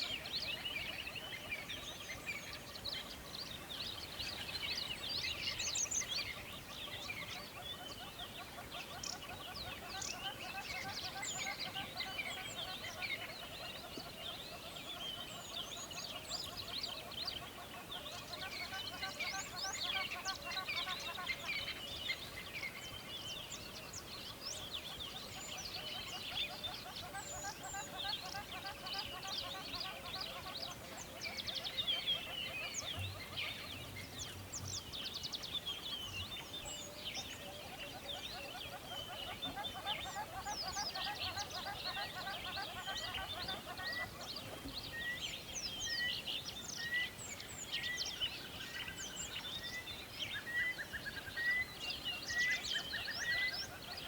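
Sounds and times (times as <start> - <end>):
songbirds chirping and whistling: 0.0 - 54.0.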